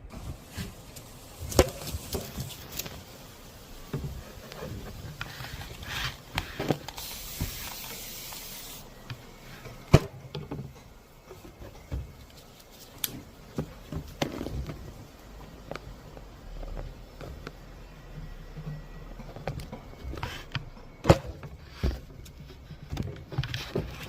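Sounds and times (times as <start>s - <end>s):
high hiss: 0.0s - 10.0s.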